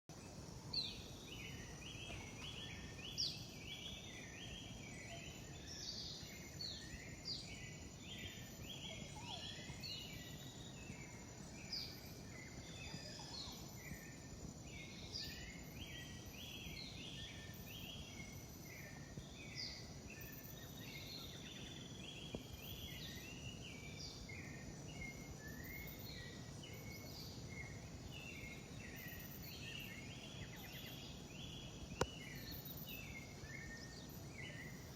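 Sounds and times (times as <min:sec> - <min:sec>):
low background hiss: 0:00.1 - 0:34.9.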